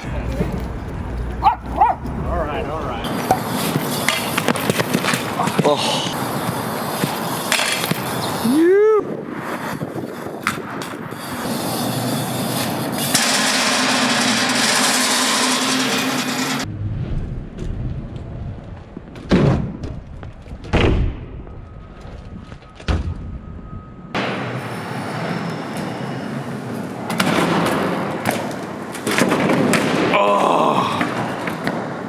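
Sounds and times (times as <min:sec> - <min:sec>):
bike tyres rolling on pavement: 0:00.0 - 0:08.5.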